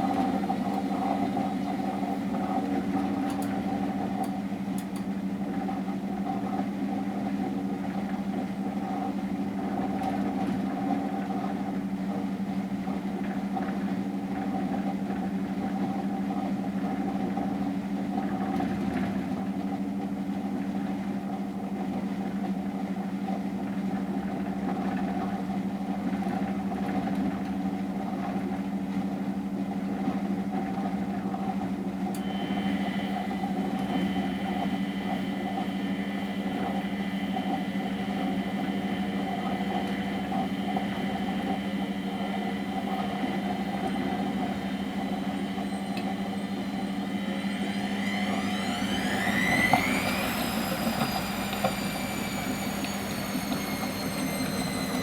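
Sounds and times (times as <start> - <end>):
washing machine hum: 0.0 - 55.0
high steady whine: 32.2 - 55.0.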